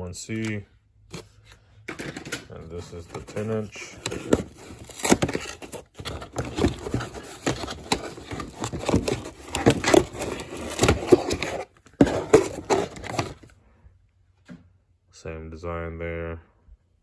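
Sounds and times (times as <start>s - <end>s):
handling tool and packaging: 0.3s - 13.5s.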